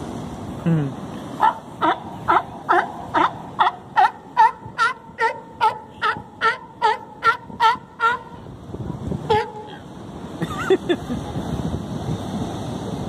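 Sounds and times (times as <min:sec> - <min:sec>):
sea lion barking: 0:01.3 - 0:09.9.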